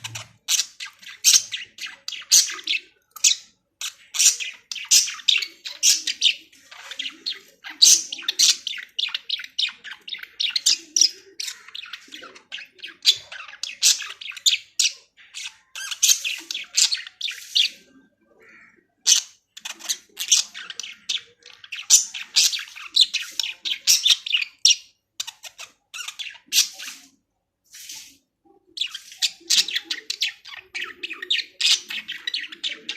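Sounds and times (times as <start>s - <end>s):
budgies chirping and warbling: 0.0s - 32.9s.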